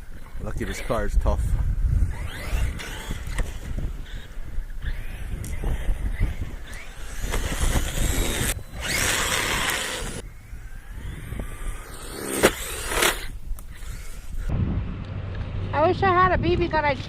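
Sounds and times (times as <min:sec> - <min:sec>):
wind on microphone: 0:00.0 - 0:17.0
tyres churning through snow: 0:02.1 - 0:14.5.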